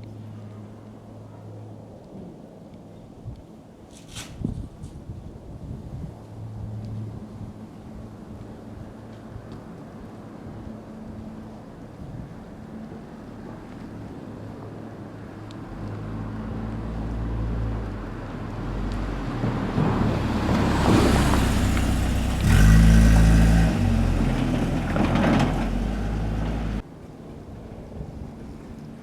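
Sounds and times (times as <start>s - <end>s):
vehicle passing by: 10.5s - 26.8s.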